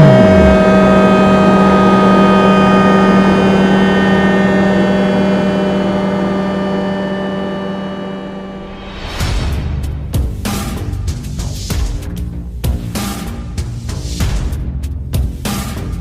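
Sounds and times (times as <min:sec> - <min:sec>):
motorcycle engine revs falling: 0:00.0 - 0:08.5
steady hum of fixed tones: 0:00.0 - 0:09.0.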